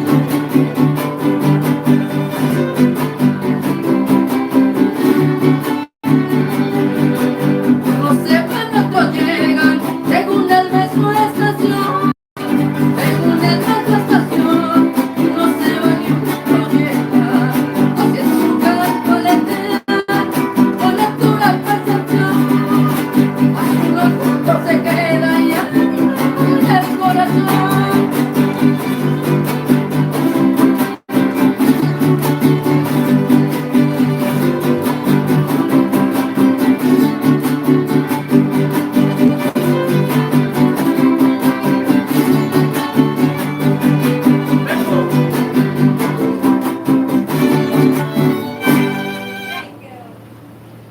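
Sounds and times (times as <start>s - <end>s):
fast strummed guitars: 0.0s - 49.7s
wavering violin melody: 4.4s - 8.1s, 36.6s - 46.4s, 47.4s - 49.7s.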